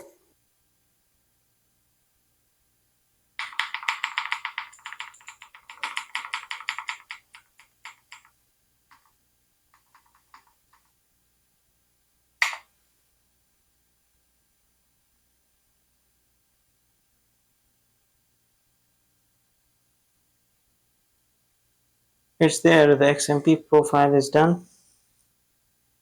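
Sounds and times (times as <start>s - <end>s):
keyboard keys clicking: 3.4s - 8.3s.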